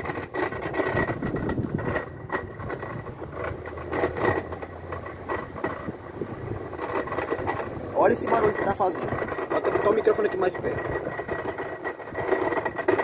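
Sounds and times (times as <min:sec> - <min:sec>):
knocking and rattling: 0:00.0 - 0:13.0.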